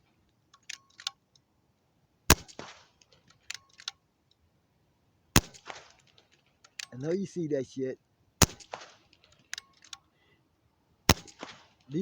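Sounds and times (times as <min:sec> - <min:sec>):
small metallic clicks: 0:00.2 - 0:01.5, 0:02.5 - 0:04.4, 0:05.6 - 0:07.0, 0:08.6 - 0:10.1
air rifle shot crack: 0:02.3 - 0:02.9, 0:05.4 - 0:06.0, 0:08.4 - 0:09.1, 0:11.1 - 0:11.8.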